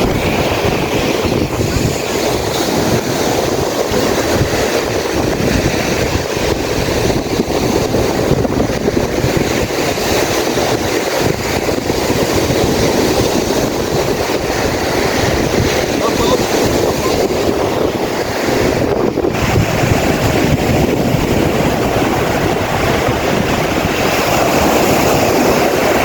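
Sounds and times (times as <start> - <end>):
surf washing on beach: 0.0 - 26.0
wind buffeting microphone: 0.0 - 26.0.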